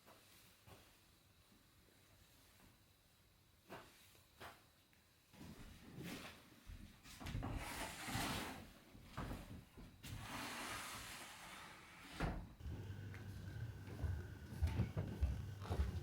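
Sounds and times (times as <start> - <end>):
sharp clicks and knocks: 12.6 - 16.0.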